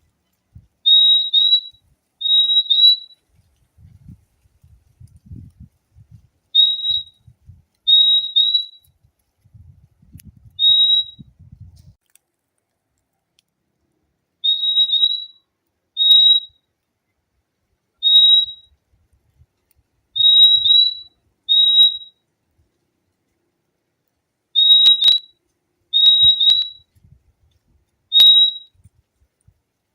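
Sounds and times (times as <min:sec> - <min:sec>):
bird whistled calls: 0:00.8 - 0:03.2, 0:06.6 - 0:07.2, 0:07.9 - 0:08.9, 0:10.6 - 0:11.3, 0:14.4 - 0:15.4, 0:16.0 - 0:16.6, 0:18.0 - 0:18.7, 0:20.2 - 0:22.2, 0:24.6 - 0:25.3, 0:25.9 - 0:26.9, 0:28.1 - 0:28.8.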